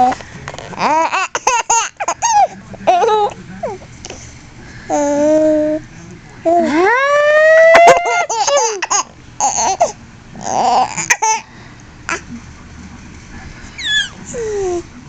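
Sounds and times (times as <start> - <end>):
baby laughing: 0.7 - 3.8, 7.7 - 11.4.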